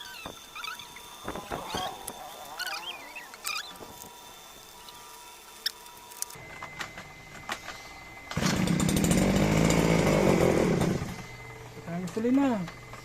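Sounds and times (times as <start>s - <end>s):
lawn mower engine running: 6.3s - 12.7s.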